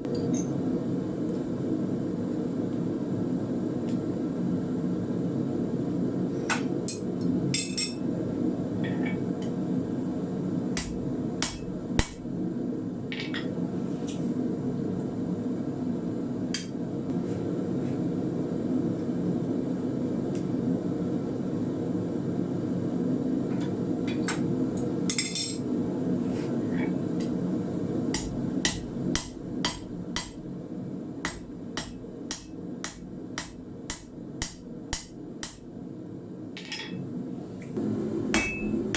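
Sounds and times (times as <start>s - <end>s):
hammer striking iron on anvil: 10.8s - 12.2s, 28.1s - 30.4s, 31.2s - 35.6s, 38.3s - 38.9s.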